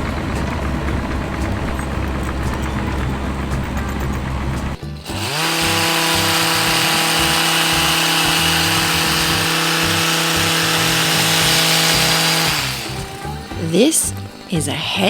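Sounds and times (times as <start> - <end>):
hedge trimmer motor whine: 0.0 - 15.0.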